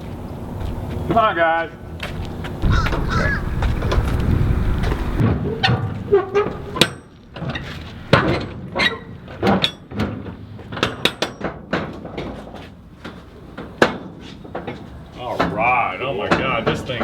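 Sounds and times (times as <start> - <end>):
metal clanks and knocks: 4.8 - 15.6, 16.2 - 17.0.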